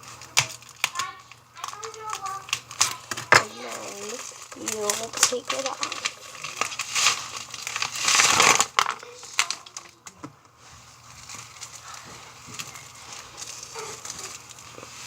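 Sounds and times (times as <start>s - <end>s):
plastic wrap crinkling: 0.0s - 15.0s.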